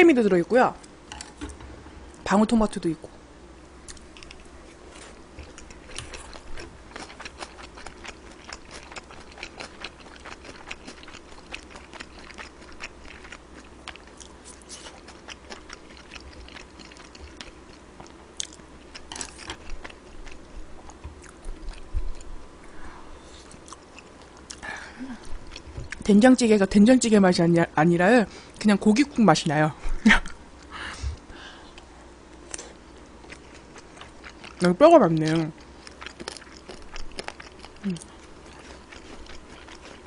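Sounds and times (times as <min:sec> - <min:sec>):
person chewing crunchy food: 0:03.8 - 0:22.4, 0:23.2 - 0:26.0, 0:30.6 - 0:40.0.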